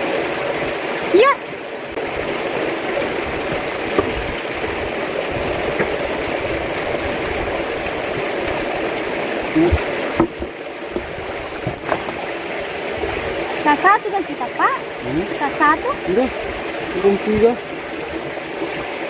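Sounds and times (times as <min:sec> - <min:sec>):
running water rushing: 0:00.0 - 0:19.0
soft knocks: 0:03.4 - 0:04.8, 0:05.6 - 0:06.1, 0:09.6 - 0:12.2.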